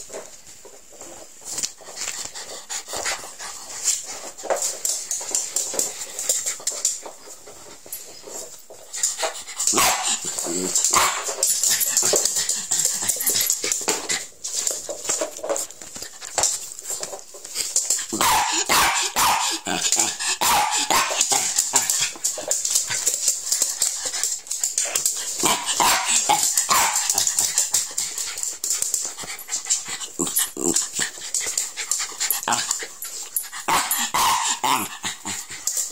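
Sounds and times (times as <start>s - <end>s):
terrier barking and whining: 9.6s - 11.8s, 18.1s - 22.1s, 25.3s - 27.4s, 32.3s - 35.6s.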